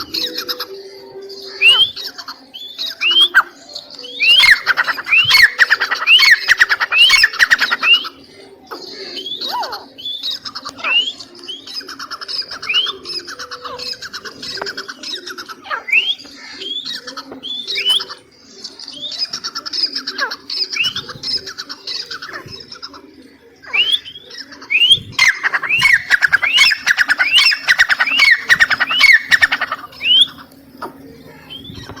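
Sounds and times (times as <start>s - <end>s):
francolin calling: 0.0s - 22.5s, 23.6s - 32.0s.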